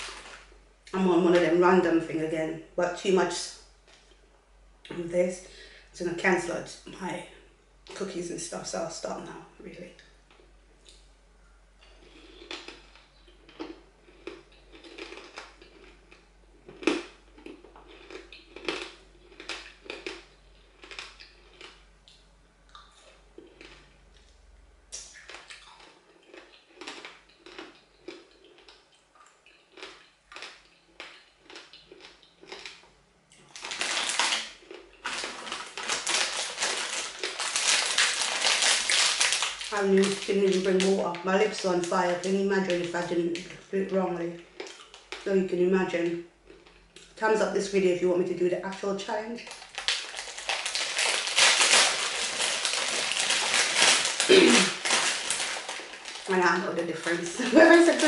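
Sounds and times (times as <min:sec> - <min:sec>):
plastic packaging crackling: 0:00.0 - 0:01.6, 0:33.4 - 0:43.6, 0:48.7 - 0:58.0
crunchy pork crackling being chewed: 0:11.8 - 0:40.9, 0:44.4 - 0:45.3, 0:46.4 - 0:47.2, 0:49.4 - 0:56.3.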